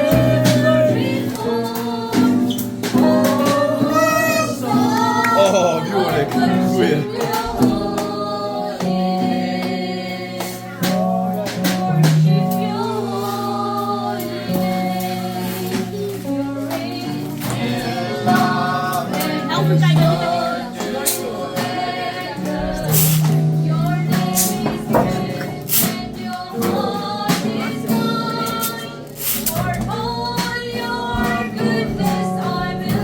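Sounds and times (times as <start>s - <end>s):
congregation and choir singing: 0.0s - 33.0s
instrumental accompaniment: 0.0s - 33.0s
percussion strokes: 28.6s - 31.5s.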